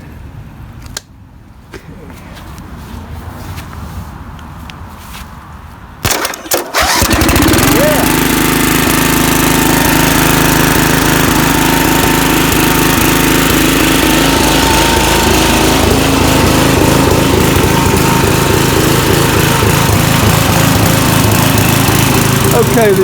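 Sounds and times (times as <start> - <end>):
small mower engine running: 6.1 - 23.0.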